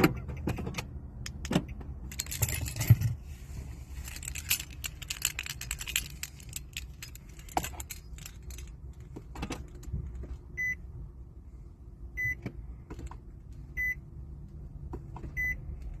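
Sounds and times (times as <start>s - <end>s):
keys jangling: 2.0s - 3.2s, 4.0s - 9.0s
car electronic beep: 10.6s - 10.9s, 12.2s - 12.4s, 13.7s - 14.0s, 15.3s - 15.6s.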